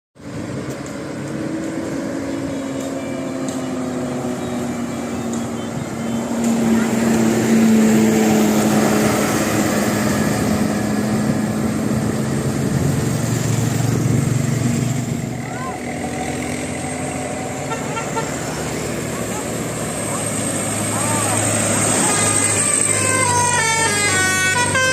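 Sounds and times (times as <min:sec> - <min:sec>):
bus engine droning: 0:00.2 - 0:24.9.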